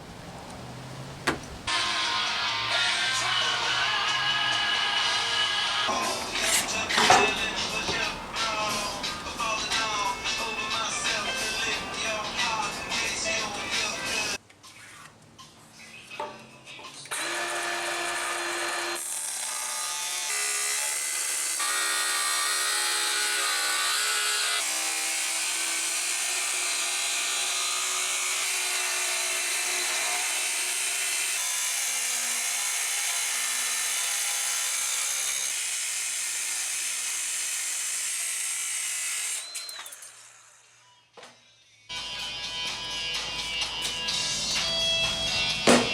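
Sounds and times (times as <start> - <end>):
electric saw cutting wood: 1.7 - 10.0, 17.1 - 41.0.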